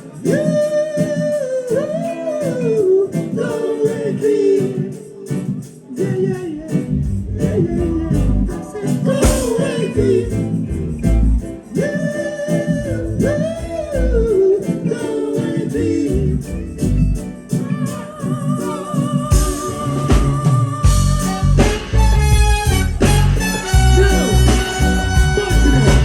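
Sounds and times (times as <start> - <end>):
person singing: 0.0 - 26.0
reggae band playing: 0.0 - 26.0
steady bass beat: 9.2 - 11.5, 16.1 - 17.2, 19.3 - 26.0.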